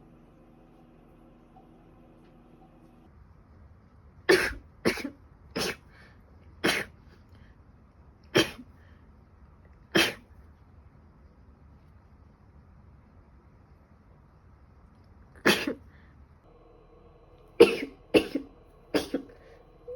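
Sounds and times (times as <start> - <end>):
woman coughing: 4.3 - 5.9, 6.6 - 6.9, 15.4 - 15.8, 17.5 - 19.9.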